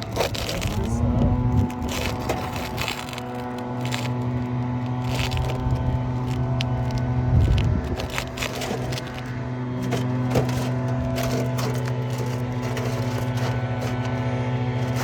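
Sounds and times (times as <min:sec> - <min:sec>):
low mechanical motor hum: 0:00.0 - 0:15.0
scrapes and clicks on shingles: 0:00.0 - 0:15.0.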